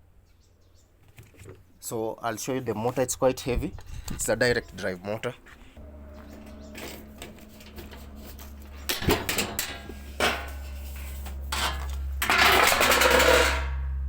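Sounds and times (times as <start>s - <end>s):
rattling scrape: 2.8s - 14.0s
low hum: 3.6s - 14.0s
metal knocks and clatter: 5.6s - 14.0s.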